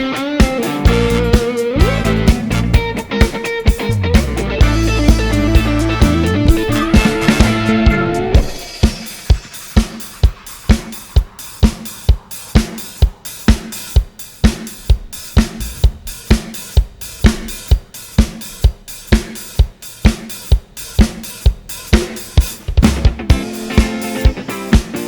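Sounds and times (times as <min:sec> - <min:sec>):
electric guitar: 0:00.0 - 0:08.8, 0:23.0 - 0:25.0
drum kit playing a beat: 0:00.0 - 0:25.0.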